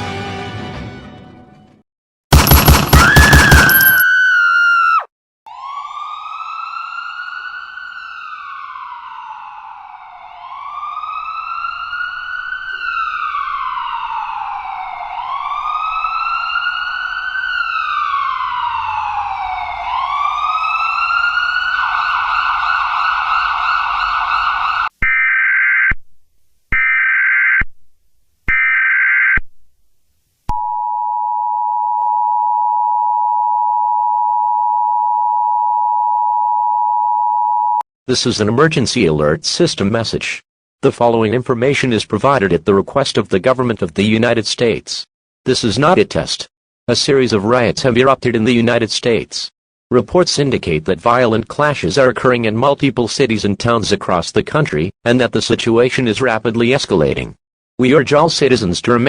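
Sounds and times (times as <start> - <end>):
siren rising and falling: 3.0 - 26.0, 26.7 - 27.7, 28.5 - 29.5, 30.5 - 37.8.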